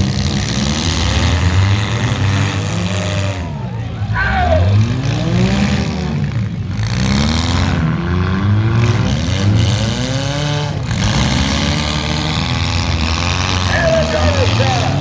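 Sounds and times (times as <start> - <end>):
car engines revving: 0.0 - 15.0.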